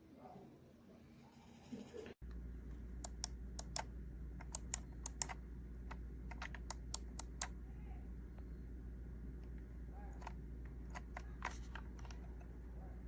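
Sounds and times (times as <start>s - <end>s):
keypad keys clicking: 3.0s - 3.8s, 4.4s - 5.4s.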